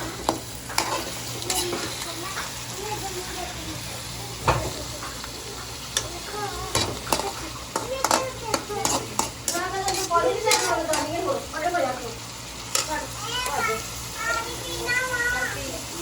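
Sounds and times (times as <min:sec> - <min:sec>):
spatula scraping and knocking pan: 0:00.0 - 0:02.5, 0:06.7 - 0:11.4
chicken sizzling in hot oil: 0:00.0 - 0:16.0.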